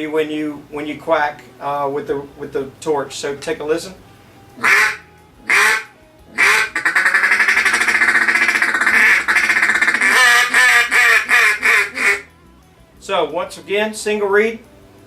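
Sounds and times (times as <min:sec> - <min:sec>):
duck call quacks: 0:04.6 - 0:12.3
rapid duck call chuckle: 0:04.6 - 0:12.3.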